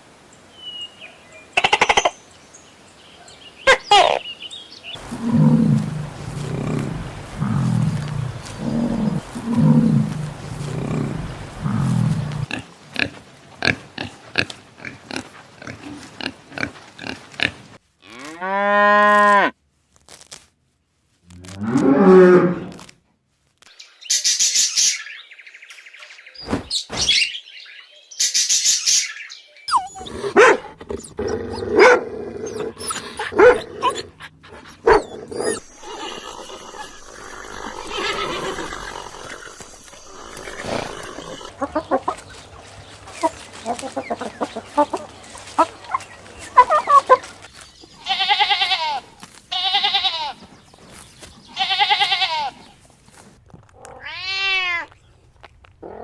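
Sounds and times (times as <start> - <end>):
animal calls: 5.0 - 12.5, 29.6 - 48.8
short pitched calls: 34.8 - 42.4.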